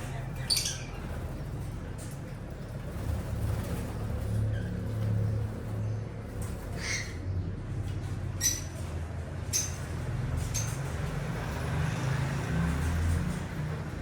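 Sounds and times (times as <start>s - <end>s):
birds chirping: 0.0s - 1.4s.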